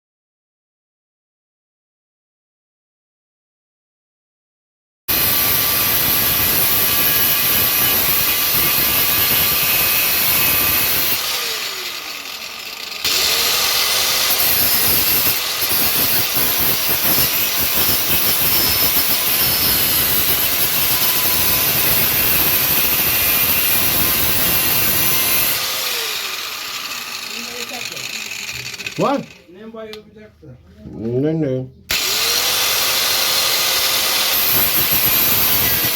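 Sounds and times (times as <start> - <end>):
power tool running: 5.1 - 29.8, 31.9 - 35.9.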